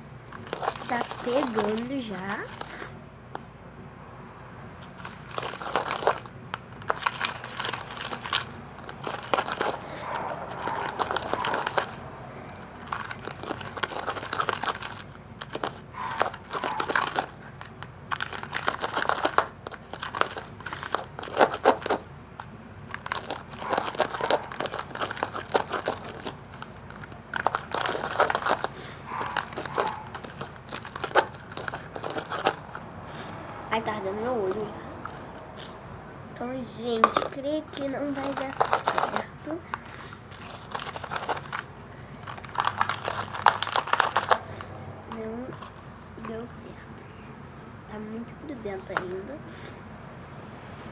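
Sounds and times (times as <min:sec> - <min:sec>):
hands squishing sticky slime: 0:37.8 - 0:44.6.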